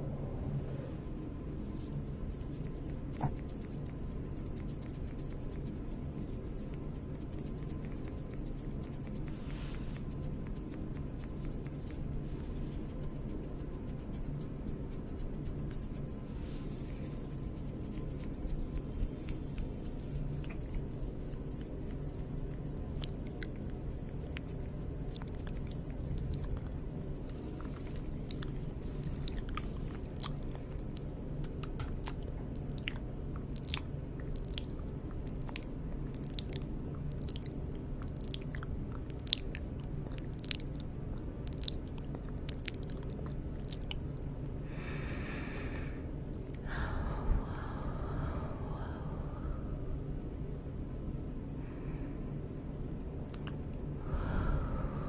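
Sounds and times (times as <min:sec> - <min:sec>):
steady low hum: 0:00.0 - 0:55.0
wet mouth clicks and smacks: 0:17.4 - 0:44.0, 0:46.3 - 0:46.6, 0:53.2 - 0:53.8.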